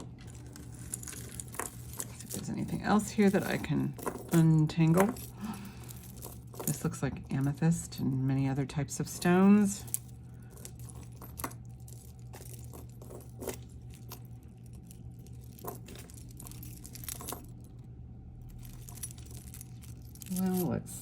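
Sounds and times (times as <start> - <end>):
steady low hum: 0.0 - 21.0
bead necklace clicking: 18.4 - 20.8.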